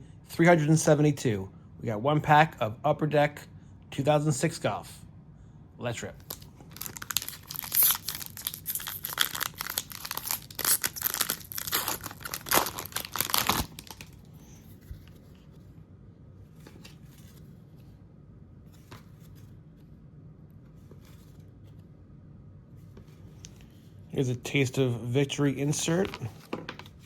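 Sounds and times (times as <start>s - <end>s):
wrapper ripping and crinkling: 6.2s - 14.2s
cards rustling: 6.2s - 15.6s, 25.7s - 27.0s.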